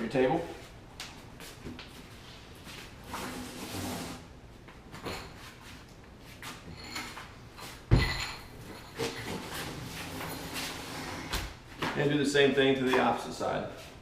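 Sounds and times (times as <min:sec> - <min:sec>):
heavy table thud: 0:07.9 - 0:08.4.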